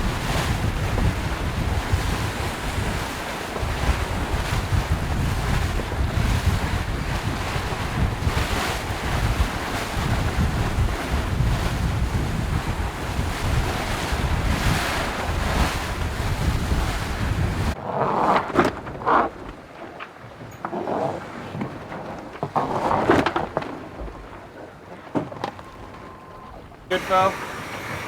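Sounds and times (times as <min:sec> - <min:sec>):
sea rushing past boat: 0:00.0 - 0:17.8, 0:23.9 - 0:28.0
wind buffeting microphone: 0:00.0 - 0:17.8.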